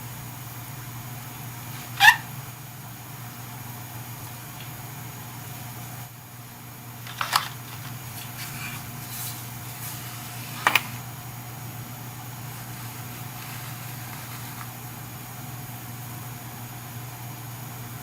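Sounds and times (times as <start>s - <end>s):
steady low hum: 0.0s - 18.0s
plastic stamps clicking: 7.0s - 8.0s.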